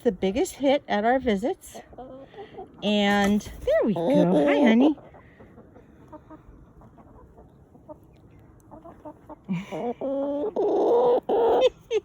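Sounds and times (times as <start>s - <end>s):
hen squawking clucks: 3.9s - 11.9s.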